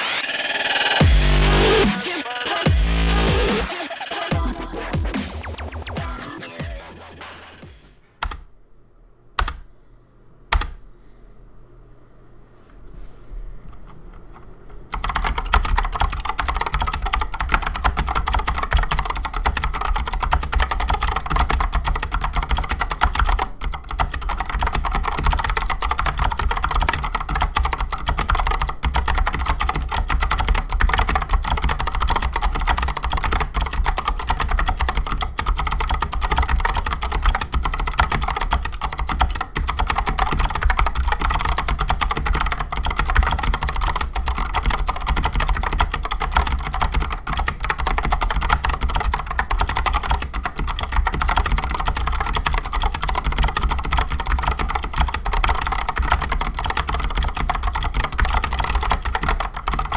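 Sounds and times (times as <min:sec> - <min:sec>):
mechanical keyboard typing: 0:08.2 - 0:08.5, 0:09.4 - 0:09.7, 0:10.5 - 0:10.8, 0:13.7 - 0:59.9.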